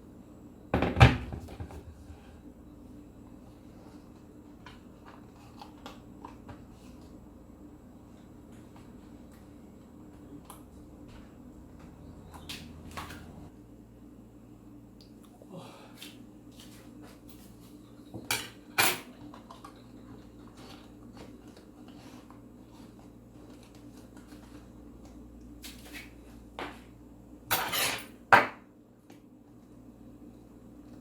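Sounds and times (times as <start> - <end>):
low steady hum: 0.0 - 31.0
dishes and utensils clattering: 27.5 - 28.2.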